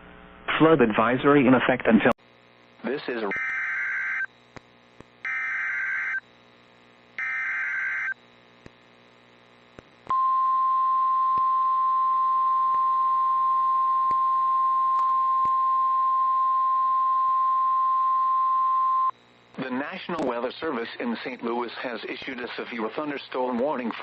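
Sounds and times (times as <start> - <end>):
harsh buzzing data bursts: 2.2 - 15.0
steady warning alarm tone: 3.3 - 4.3, 5.2 - 6.2, 7.2 - 8.2.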